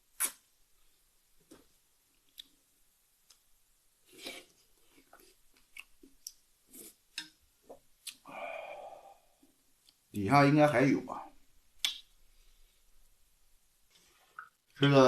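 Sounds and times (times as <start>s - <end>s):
person chewing: 4.1s - 7.0s, 8.0s - 8.3s.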